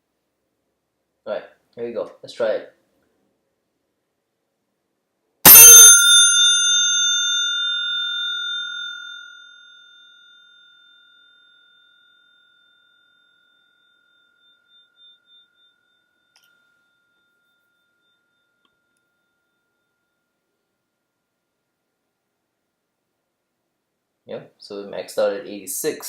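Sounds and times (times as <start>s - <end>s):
bicycle bell ringing: 5.5s - 20.5s.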